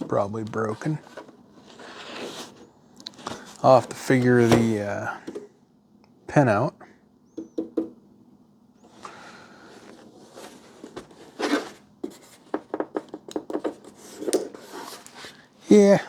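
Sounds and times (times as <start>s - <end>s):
plastic device handling noise: 0.0s - 5.5s, 9.0s - 15.4s.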